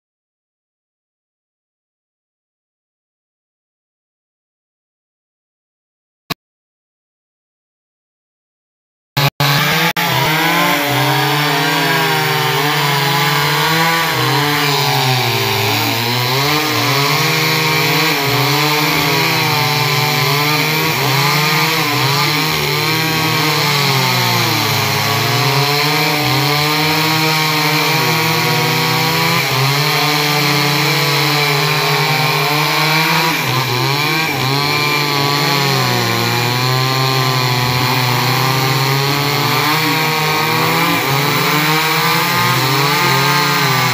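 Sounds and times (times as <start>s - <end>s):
chainsaw cutting wood: 9.2s - 43.9s.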